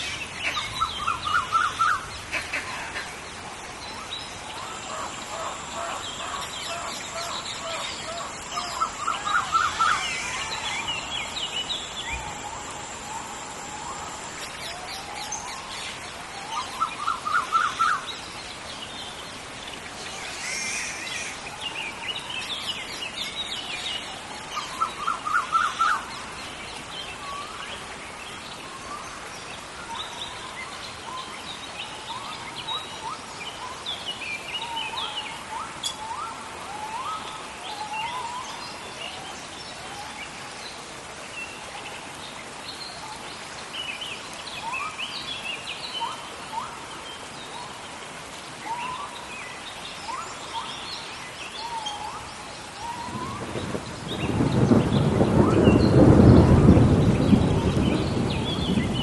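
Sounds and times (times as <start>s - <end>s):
birds calling: 0.0s - 12.8s
rain hiss: 0.0s - 59.0s.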